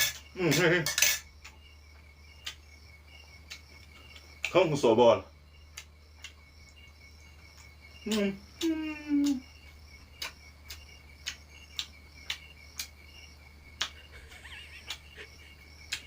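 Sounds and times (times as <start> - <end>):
crickets chirping: 0.0 - 16.0.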